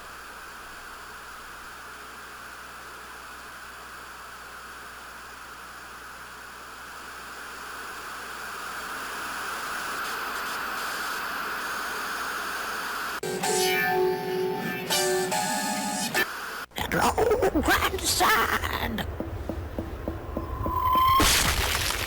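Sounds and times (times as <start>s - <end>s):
television static hiss: 0.0s - 19.2s.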